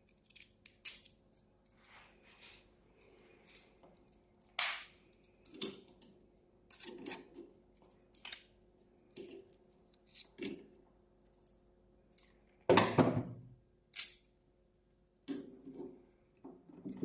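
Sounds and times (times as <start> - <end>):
sharp clicks and scrapes of tools: 6.7 - 8.5, 9.1 - 10.6.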